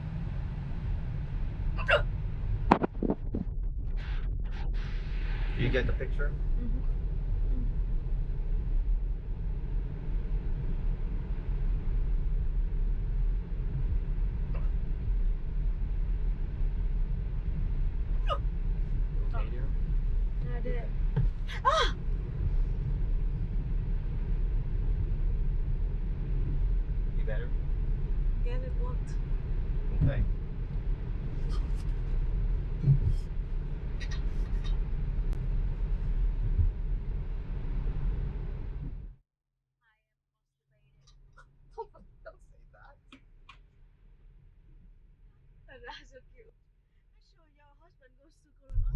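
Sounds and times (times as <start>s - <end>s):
tyre and road rumble: 0.0s - 39.1s.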